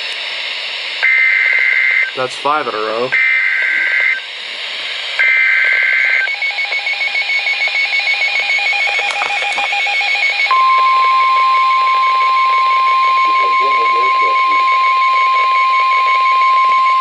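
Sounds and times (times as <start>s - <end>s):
steady warning alarm tone: 0.0s - 17.0s
rapid alarm beeps: 1.0s - 4.4s, 5.1s - 17.0s
warbling data burst: 5.1s - 17.0s.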